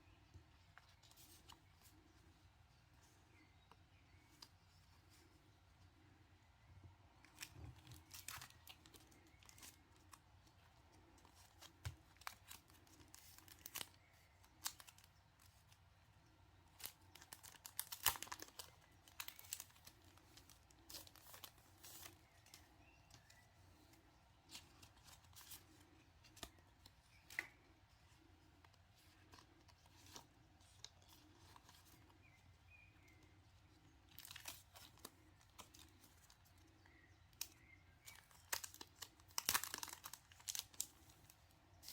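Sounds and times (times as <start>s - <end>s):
packaging crinkling and tearing: 11.2s - 15.6s, 16.7s - 22.6s, 34.1s - 36.4s, 37.3s - 41.9s.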